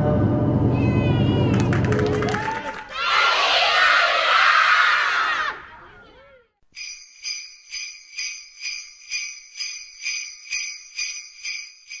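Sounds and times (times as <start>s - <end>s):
jingle bells shaken: 6.8s - 12.0s.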